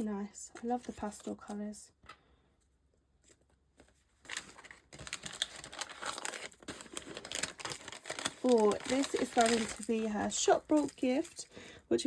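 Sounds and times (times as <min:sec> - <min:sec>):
packaging crinkling and tearing: 0:04.2 - 0:11.3.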